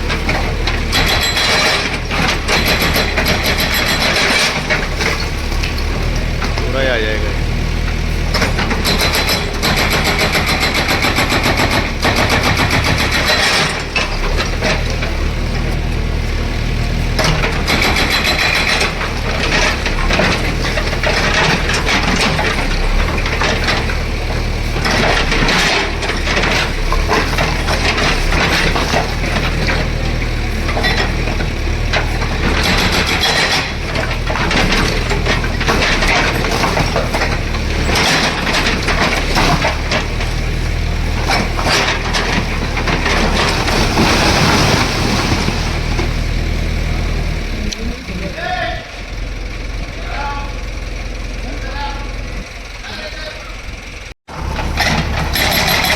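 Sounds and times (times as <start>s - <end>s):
diesel demolition machine running: 0.0s - 55.9s
structure breaking knocks and cracks: 17.1s - 46.8s.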